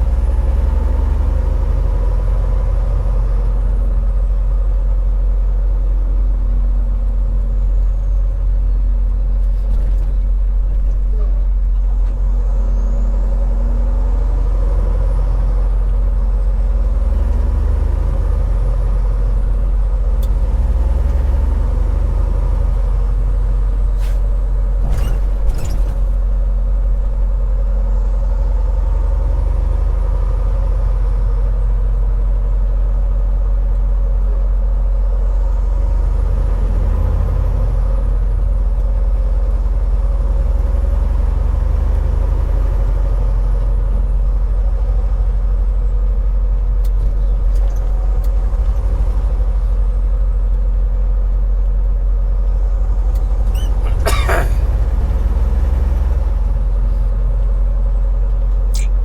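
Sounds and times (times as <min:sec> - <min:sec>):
truck engine drone: 0:00.0 - 0:59.0
brief clicks: 0:58.7 - 0:59.0.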